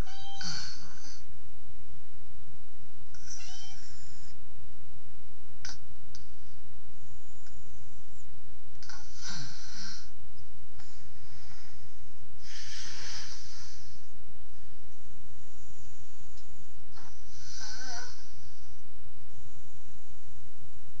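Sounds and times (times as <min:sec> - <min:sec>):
steady low hum: 0:00.0 - 0:21.0
person snoring: 0:08.8 - 0:10.2, 0:10.8 - 0:14.1, 0:15.0 - 0:20.2.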